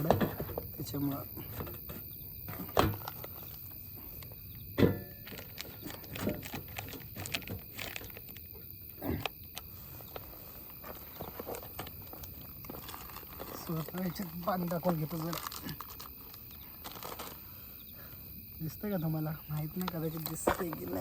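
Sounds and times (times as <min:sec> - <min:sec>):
handling knocks and clunks: 0:00.0 - 0:09.4, 0:10.1 - 0:15.6, 0:19.6 - 0:21.0
night insects chirping: 0:00.0 - 0:21.0.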